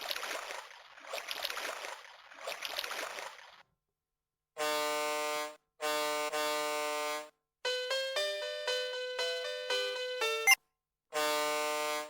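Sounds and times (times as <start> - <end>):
toy speaker splashing water effect: 0.0 - 3.6.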